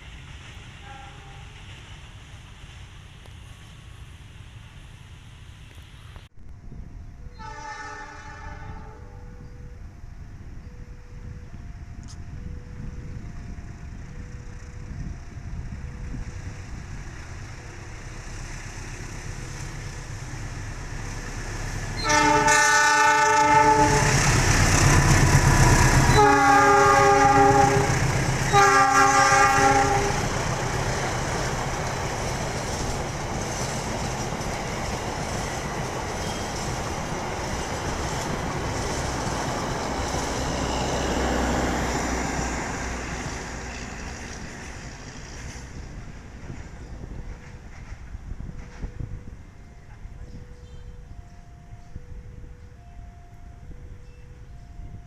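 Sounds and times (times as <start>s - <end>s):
train wheels rumbling on rails: 0.0s - 55.0s
locomotive horn blasts: 0.8s - 1.6s, 7.3s - 9.7s, 22.0s - 24.2s, 25.4s - 30.4s.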